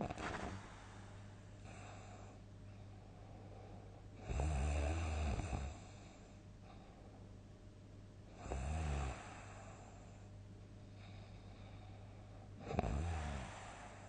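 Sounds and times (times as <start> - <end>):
quiet breathing: 0.0 - 7.5, 8.3 - 14.0
person snoring loudly: 12.6 - 13.7.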